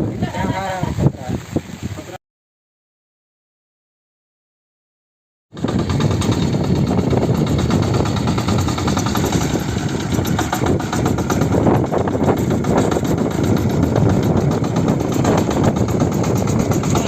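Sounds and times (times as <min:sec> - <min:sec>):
tractor engine running: 0:05.6 - 0:17.0.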